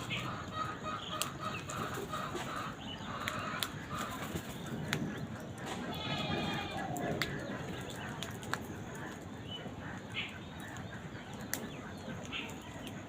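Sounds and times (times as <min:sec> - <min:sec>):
background hubbub: 0:00.0 - 0:13.0.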